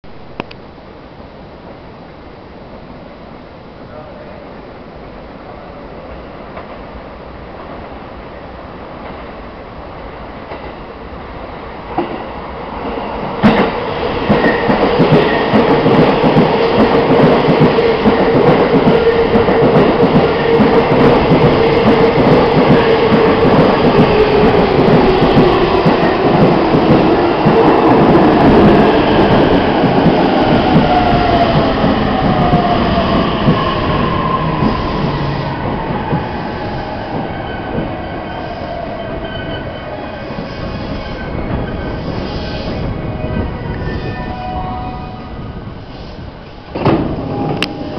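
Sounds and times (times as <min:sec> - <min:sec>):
train rail and wheel noise: 0:00.1 - 0:47.9
falling train whine: 0:10.1 - 0:47.9.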